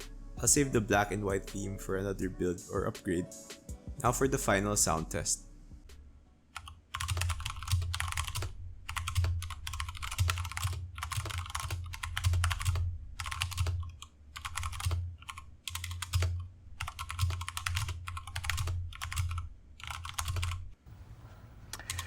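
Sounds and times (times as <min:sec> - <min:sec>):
mechanical keyboard typing: 0:06.6 - 0:20.6, 0:21.8 - 0:22.0.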